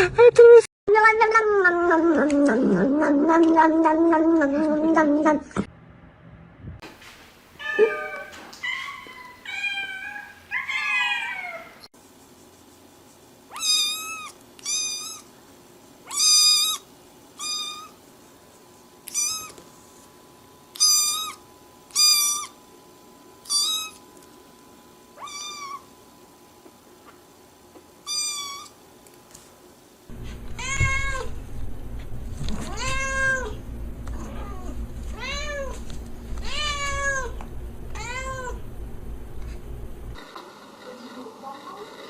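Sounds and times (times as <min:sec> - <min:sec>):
cat meowing: 0:07.6 - 0:11.9, 0:13.5 - 0:15.3, 0:19.1 - 0:19.6, 0:25.2 - 0:25.8, 0:30.6 - 0:31.3, 0:32.6 - 0:33.6, 0:34.2 - 0:35.8, 0:36.4 - 0:37.4, 0:38.0 - 0:38.6.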